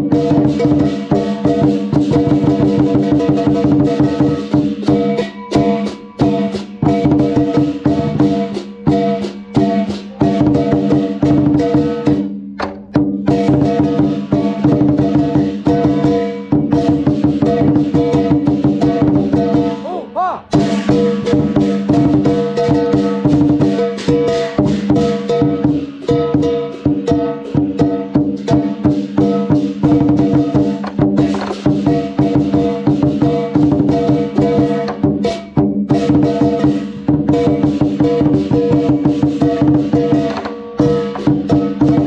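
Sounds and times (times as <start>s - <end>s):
ringing cymbals: 0.0s - 12.3s, 13.3s - 19.8s, 20.5s - 30.8s
drum beaten fast: 0.0s - 42.0s
gong: 0.1s - 12.3s, 13.3s - 19.8s, 20.5s - 30.8s.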